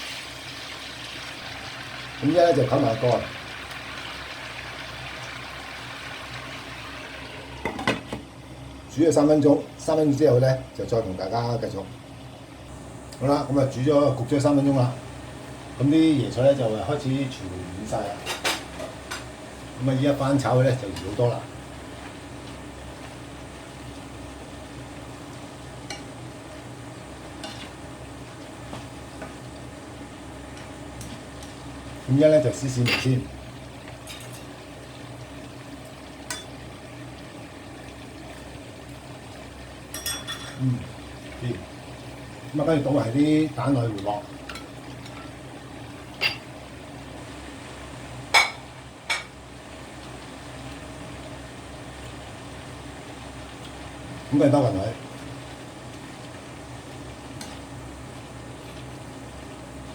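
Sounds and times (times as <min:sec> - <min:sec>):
food sizzling in a wok: 0:00.0 - 0:08.6, 0:09.5 - 0:59.9
utensils clinking against cookware: 0:32.8 - 0:33.2, 0:39.9 - 0:40.6.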